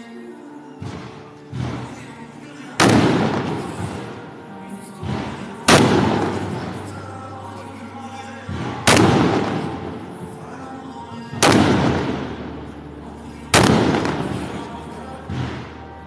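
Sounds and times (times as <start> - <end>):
fireworks bursting: 2.8 - 4.3, 5.0 - 7.1, 8.5 - 10.6, 11.4 - 12.9, 13.5 - 15.9.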